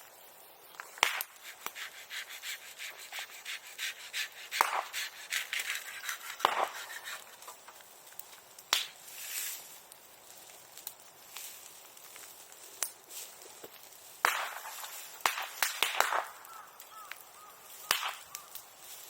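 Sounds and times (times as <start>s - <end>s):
bonfire crackling: 0.0s - 19.0s
loud sharp pops: 0.8s - 1.8s, 4.5s - 7.4s, 8.7s - 9.0s, 14.2s - 17.2s, 17.8s - 18.6s
brief hiss: 9.0s - 9.8s.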